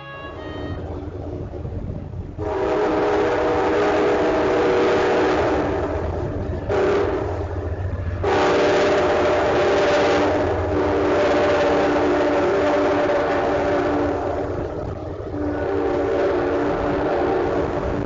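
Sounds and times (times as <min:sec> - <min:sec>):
train horn chord: 0:00.0 - 0:01.2, 0:02.4 - 0:05.9, 0:06.7 - 0:07.4, 0:08.2 - 0:14.6, 0:15.3 - 0:18.0
train rumbling: 0:00.0 - 0:18.0.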